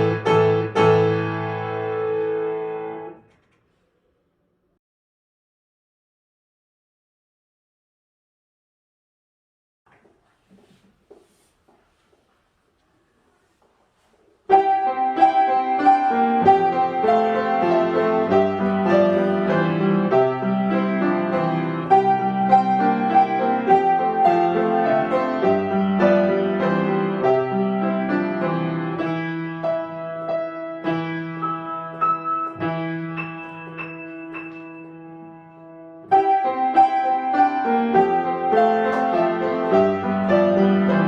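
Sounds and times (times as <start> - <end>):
solo piano playing: 0.0 - 3.2, 14.5 - 41.0.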